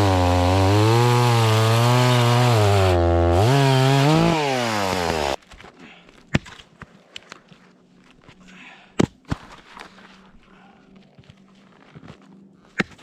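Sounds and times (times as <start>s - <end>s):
chainsaw running at high revs: 0.0s - 5.4s.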